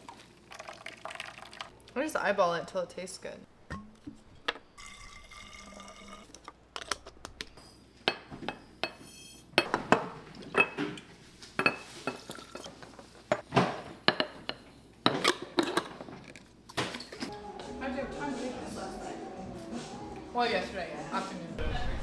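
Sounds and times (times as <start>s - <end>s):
dishes and glassware clinking: 8.1s - 16.1s.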